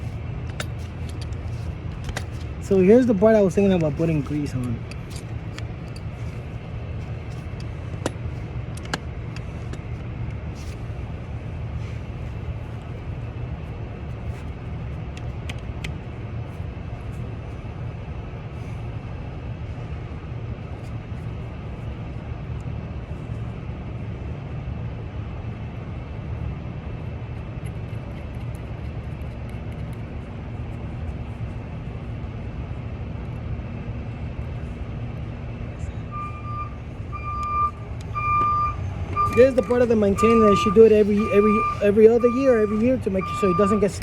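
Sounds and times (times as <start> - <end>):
low rumble of vehicle engines: 0.0 - 44.0.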